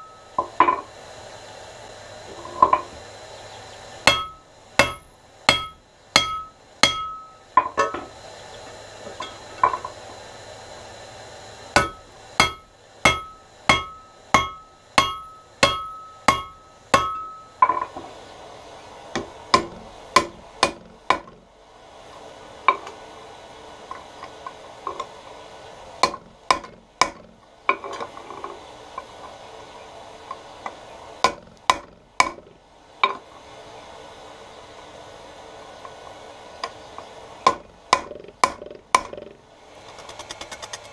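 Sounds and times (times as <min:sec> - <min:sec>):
hammer striking iron on anvil: 0:00.0 - 0:00.9, 0:04.0 - 0:08.1, 0:11.8 - 0:18.0, 0:19.1 - 0:21.3, 0:26.0 - 0:27.8, 0:31.2 - 0:32.4, 0:37.4 - 0:39.2.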